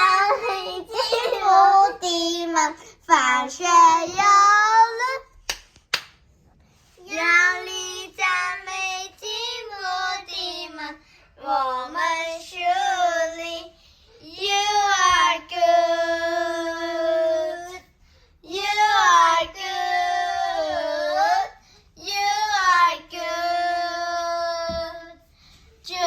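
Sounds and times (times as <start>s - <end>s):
child singing: 0.0s - 5.4s, 7.0s - 26.0s.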